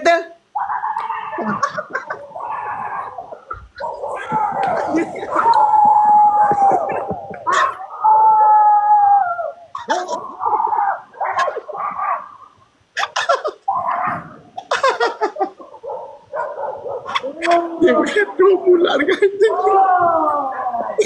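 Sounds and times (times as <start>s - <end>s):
person howling like a dog: 0.6s - 12.4s, 19.5s - 21.0s
person yelping and barking: 0.6s - 12.4s, 13.0s - 18.7s.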